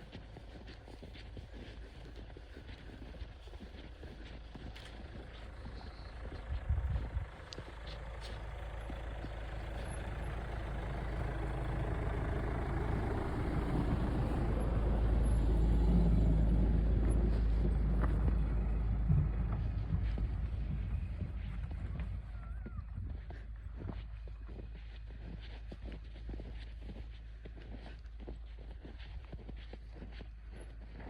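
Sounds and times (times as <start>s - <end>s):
vehicle engine and road noise: 0.0s - 31.0s.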